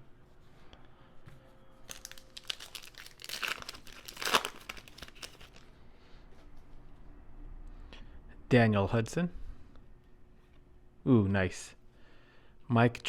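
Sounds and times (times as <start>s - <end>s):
foil wrapper crinkling: 1.9s - 5.7s.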